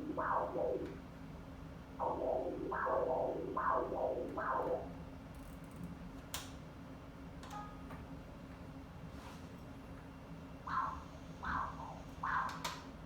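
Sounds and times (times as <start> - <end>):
machine hum: 0.0 - 5.4, 10.3 - 13.0.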